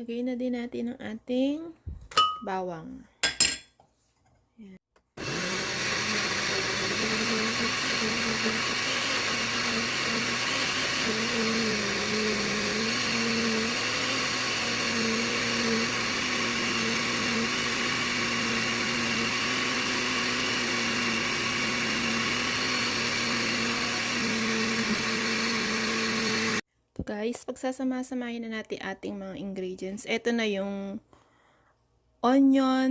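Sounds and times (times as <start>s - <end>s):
electric blender running: 5.2s - 26.6s.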